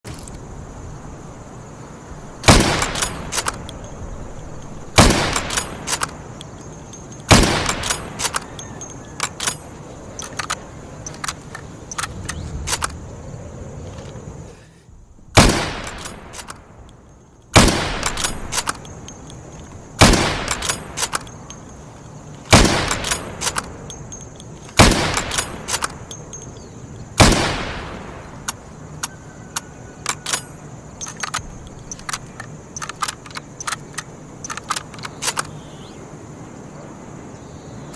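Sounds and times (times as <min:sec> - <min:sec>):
rifle shots: 0:02.4 - 0:03.7, 0:04.9 - 0:06.2, 0:07.3 - 0:08.4, 0:15.4 - 0:16.6, 0:17.5 - 0:18.8, 0:20.0 - 0:21.3, 0:22.5 - 0:23.7, 0:24.8 - 0:26.0, 0:27.2 - 0:28.5
metallic clicks of rifle bolt: 0:02.4 - 0:13.0, 0:15.5 - 0:27.4, 0:28.4 - 0:35.6.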